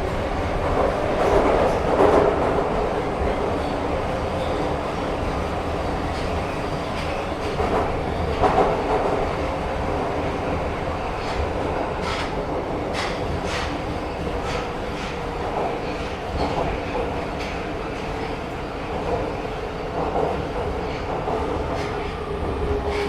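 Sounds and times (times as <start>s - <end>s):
train rumbling along track: 0.0s - 23.0s
train wheels clacking: 11.1s - 23.0s.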